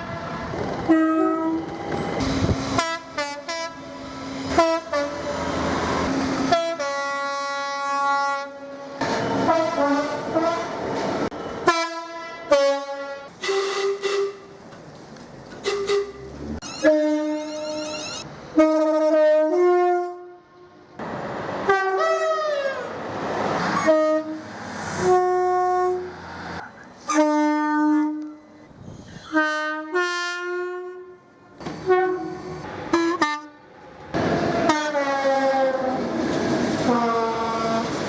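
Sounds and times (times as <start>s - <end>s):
two-tone train horn blasts: 0.0s - 1.7s, 2.7s - 3.9s, 4.5s - 5.5s, 6.4s - 10.8s, 11.6s - 14.6s, 15.6s - 20.8s, 21.6s - 22.9s, 23.8s - 24.4s, 25.0s - 26.1s, 27.1s - 28.5s, 29.2s - 33.7s, 34.6s - 36.0s, 36.8s - 37.9s
rail clatter: 9.0s - 11.7s.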